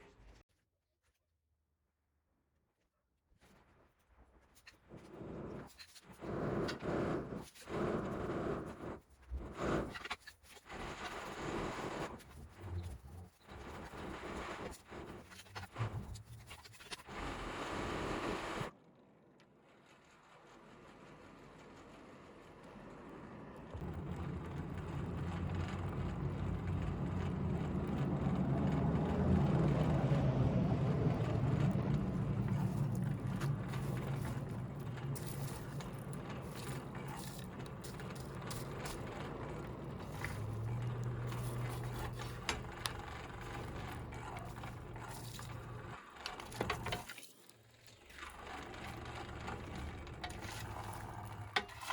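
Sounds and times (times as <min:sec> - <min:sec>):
forge blower whirring: 0:23.8 - 0:47.0, 0:48.2 - 0:51.9
clicks and crackles: 0:23.8 - 0:51.9.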